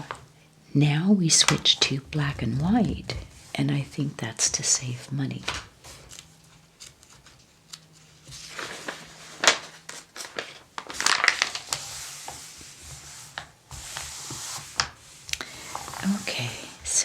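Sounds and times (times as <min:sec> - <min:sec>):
paper pages rustling: 0:05.3 - 0:16.8.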